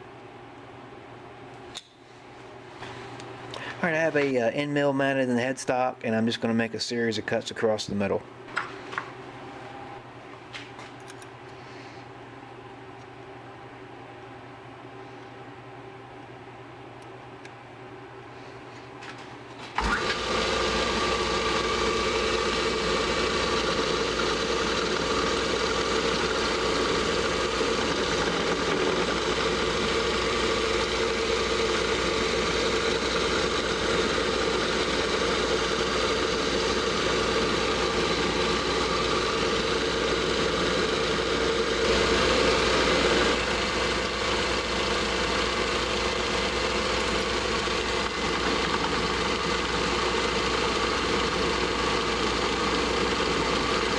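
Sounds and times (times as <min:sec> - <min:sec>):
metal lathe running: 0:19.8 - 0:53.9.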